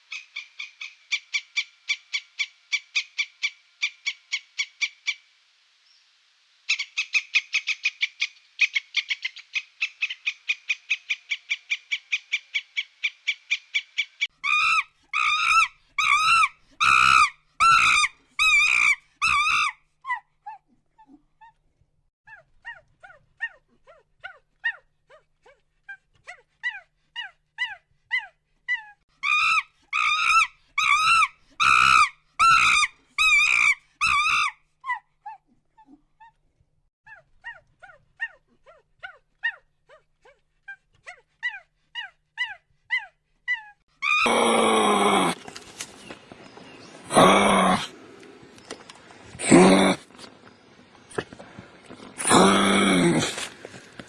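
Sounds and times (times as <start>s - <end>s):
loud squeaky animal calls: 29.2s - 34.6s.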